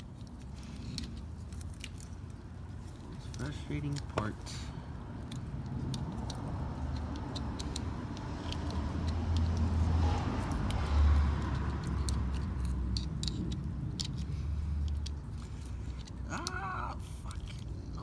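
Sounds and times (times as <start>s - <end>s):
steady low rumble: 0.0s - 18.0s
small metallic clicks: 5.1s - 16.6s.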